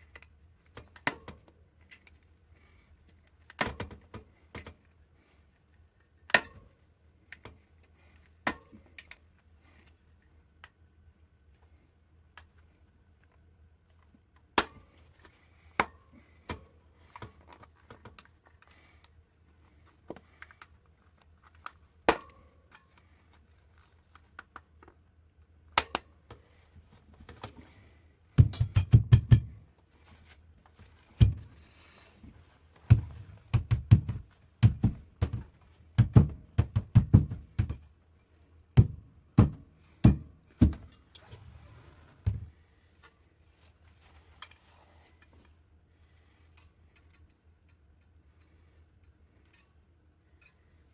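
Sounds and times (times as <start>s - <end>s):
scattered clicks and knocks: 28.4s - 29.6s.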